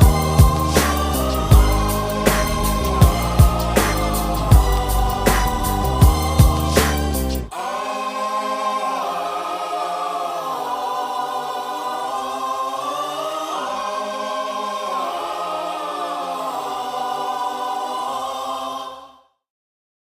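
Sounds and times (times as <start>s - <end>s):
sustained background music chords: 0.0s - 10.1s.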